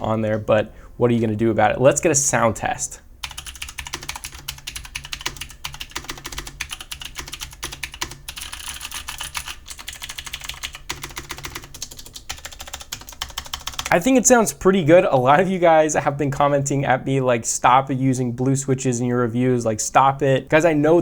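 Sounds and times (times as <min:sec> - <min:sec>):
mechanical keyboard typing: 0:03.2 - 0:13.9.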